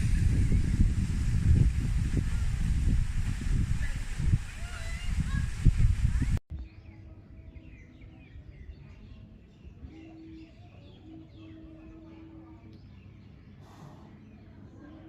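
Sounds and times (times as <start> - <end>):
small birds chirping: 3.8 - 15.0.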